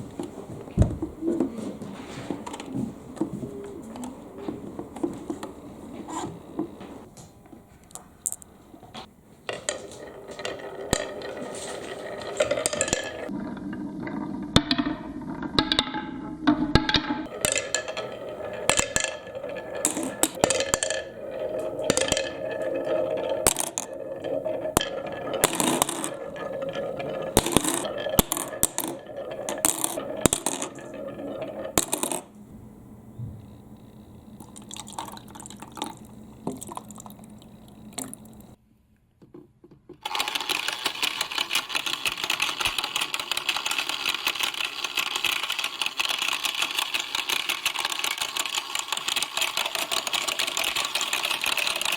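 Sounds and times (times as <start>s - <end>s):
marbles rolling on wooden track: 1.4s - 7.1s, 9.5s - 32.5s, 33.2s - 38.6s, 40.0s - 51.9s
toy washing machine rattling: 9.6s - 13.4s, 40.0s - 51.9s.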